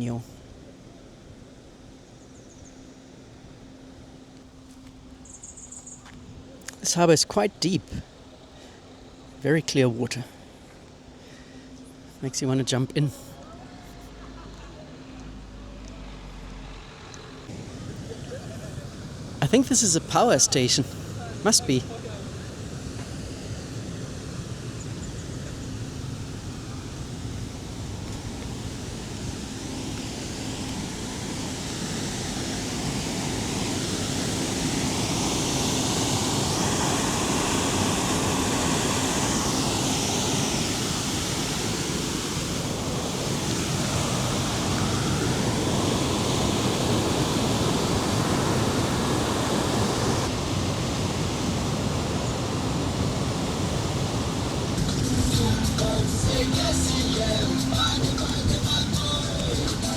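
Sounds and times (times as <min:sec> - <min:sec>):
water rushing at shore: 0:17.4 - 0:59.9.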